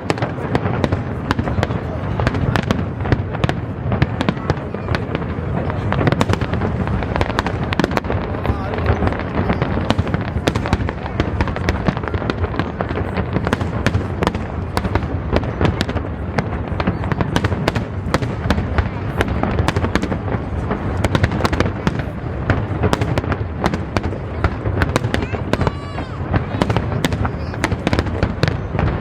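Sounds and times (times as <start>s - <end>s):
fireworks crackling and banging: 0.0s - 29.0s.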